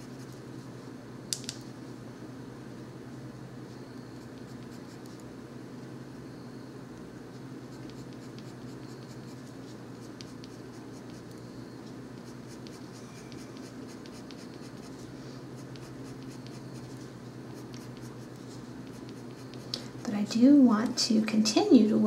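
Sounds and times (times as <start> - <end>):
steady low hum: 0.0 - 22.0
pencil scratching on paper: 7.6 - 11.3, 12.2 - 19.7.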